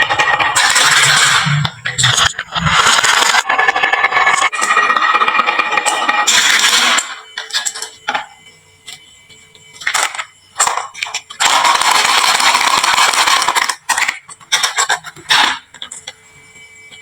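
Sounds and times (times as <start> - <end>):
marbles rolling rattle: 9.8 - 15.0.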